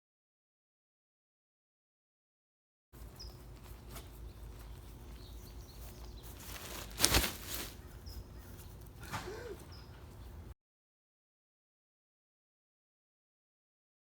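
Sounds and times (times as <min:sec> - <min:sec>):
high bird chirps: 0:03.1 - 0:06.9, 0:07.7 - 0:09.0, 0:09.6 - 0:10.5
loud sudden rustle or clatter: 0:06.7 - 0:07.8.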